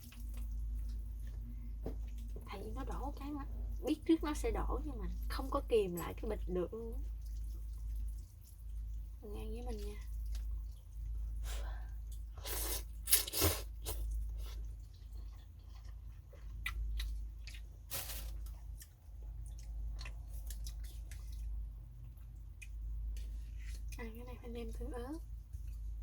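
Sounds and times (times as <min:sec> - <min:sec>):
person chewing: 0:12.0 - 0:24.0
loud slurps: 0:12.4 - 0:14.0.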